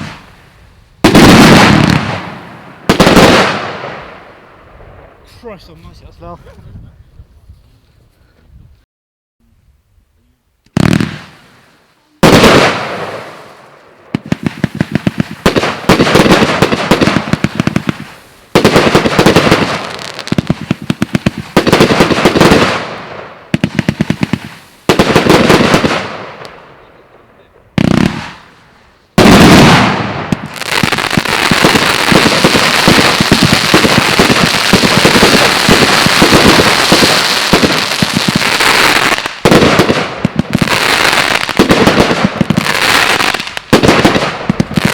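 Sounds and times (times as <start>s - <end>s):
fireworks crackling: 0.0s - 6.4s, 10.6s - 44.9s
fireworks salute reports: 5.2s - 7.0s.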